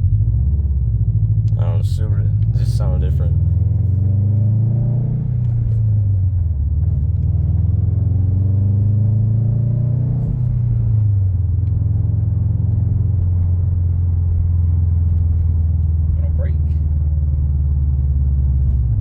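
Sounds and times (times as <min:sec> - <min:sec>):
car engine running: 0:00.0 - 0:19.0
road rumble: 0:00.0 - 0:19.0.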